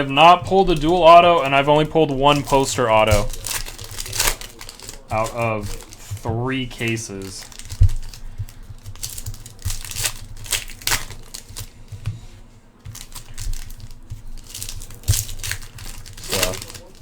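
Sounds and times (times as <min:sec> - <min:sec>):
cards rustling and clicking: 0:00.0 - 0:17.0
wrappers crinkling: 0:00.0 - 0:17.0.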